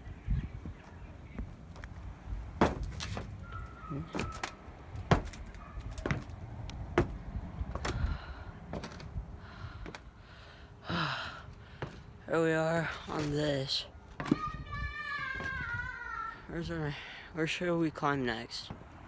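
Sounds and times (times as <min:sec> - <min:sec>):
low bumps and rumble: 0:01.4 - 0:10.0
knocks clunks and scrapes: 0:02.6 - 0:08.1, 0:08.7 - 0:09.1.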